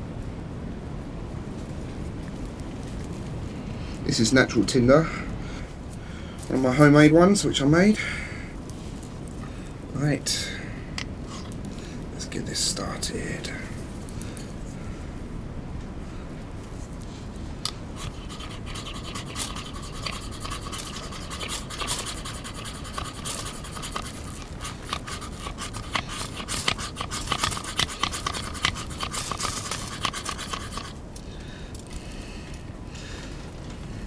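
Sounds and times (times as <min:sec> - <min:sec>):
ferro rod rasping scrapes: 0:17.7 - 0:31.0.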